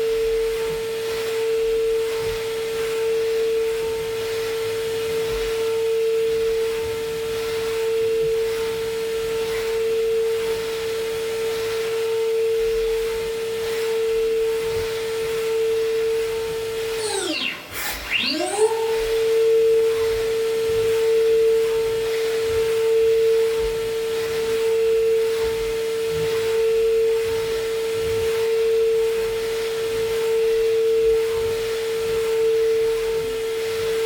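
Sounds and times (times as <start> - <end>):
high-pitched spindle whine: 11.6 - 34.0
metal cutting noise: 16.9 - 19.6.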